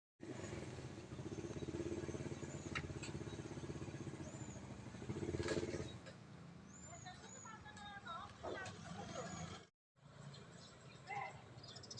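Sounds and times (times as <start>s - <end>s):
small engine idling: 0.2s - 6.2s.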